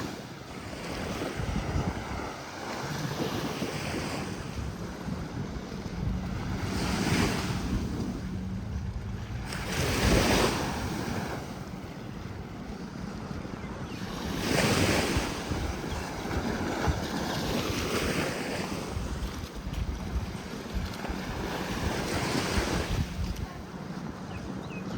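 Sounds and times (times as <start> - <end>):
waves breaking on beach: 0.0 - 24.9
wind rumbling on microphone: 0.0 - 24.9.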